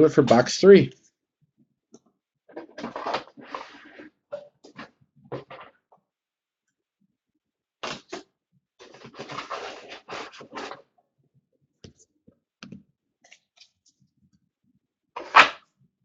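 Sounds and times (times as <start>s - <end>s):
card packaging rustling and tearing: 8.8s - 10.8s.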